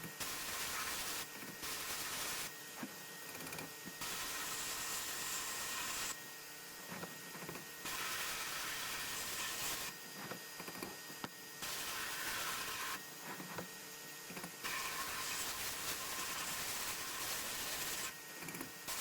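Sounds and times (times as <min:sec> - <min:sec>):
sandblasting gun hissing: 0:00.2 - 0:02.5, 0:04.0 - 0:06.1, 0:07.8 - 0:09.9, 0:11.6 - 0:13.0, 0:14.6 - 0:18.1.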